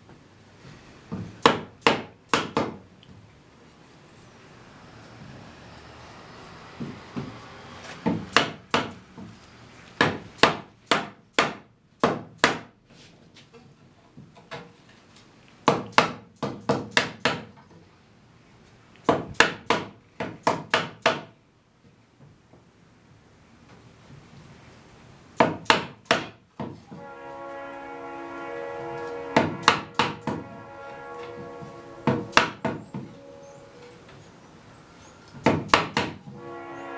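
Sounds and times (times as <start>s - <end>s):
wooden spindles being hammered: 1.1s - 2.8s, 8.0s - 9.4s, 10.0s - 12.8s, 15.6s - 17.6s, 19.0s - 21.4s, 25.4s - 27.1s, 29.0s - 33.2s, 35.4s - 36.4s.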